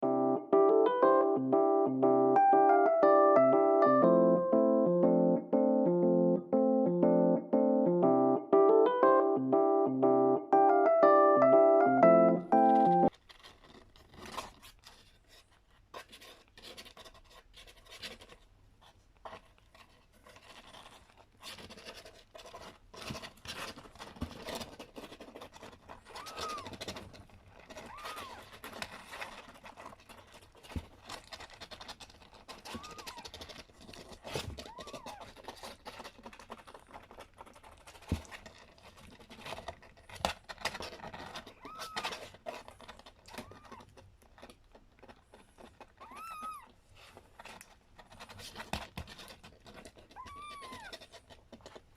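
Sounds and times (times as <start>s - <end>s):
scratching and rustling: 12.0s - 51.9s
kitten mewing: 26.0s - 27.0s, 27.7s - 28.7s, 32.5s - 33.7s, 34.3s - 35.7s, 41.5s - 42.4s, 43.2s - 44.0s, 46.0s - 46.7s, 50.1s - 51.2s.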